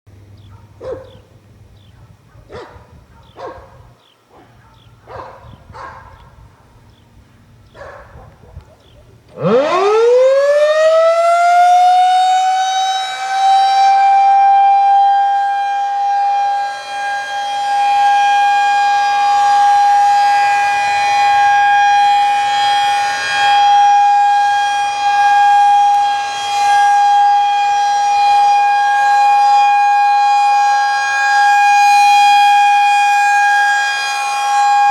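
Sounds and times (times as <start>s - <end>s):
rotating siren whine: 9.3s - 34.9s.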